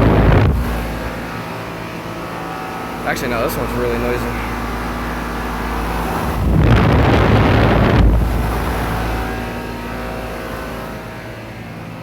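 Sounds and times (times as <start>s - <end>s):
air conditioner unit humming: 0.0s - 12.0s
rush of air: 6.1s - 9.8s.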